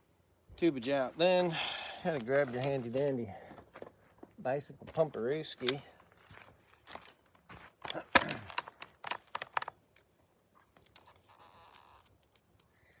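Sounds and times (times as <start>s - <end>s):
handling scrapes and knocks: 2.1s - 3.9s.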